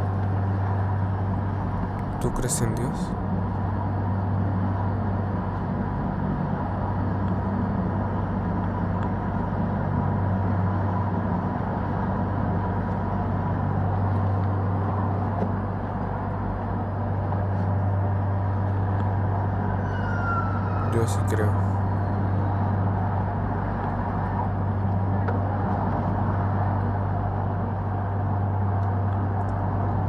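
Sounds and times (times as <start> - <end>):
moving vehicle droning: 0.0 - 5.6, 17.8 - 30.0.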